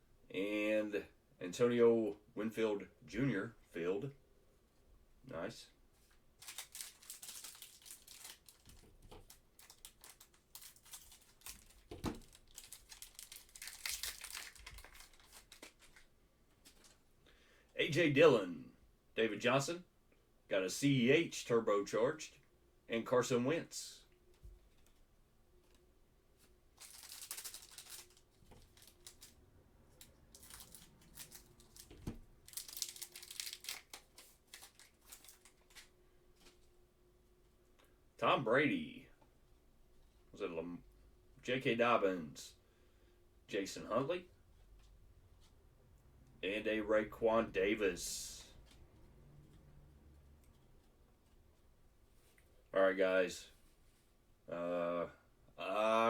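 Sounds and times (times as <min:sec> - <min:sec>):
cards rustling: 0:06.0 - 0:17.0, 0:26.4 - 0:36.7
card pack wrapper crinkling: 0:06.4 - 0:17.0, 0:26.8 - 0:36.5.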